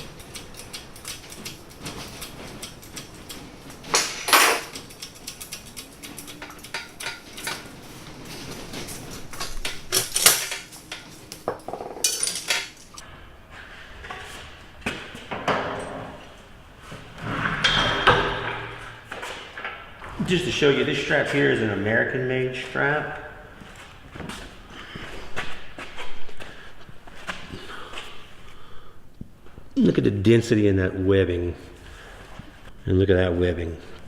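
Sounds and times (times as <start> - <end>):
metal clatter: 0.0 - 13.0
metal parts clanking: 0.0 - 13.0.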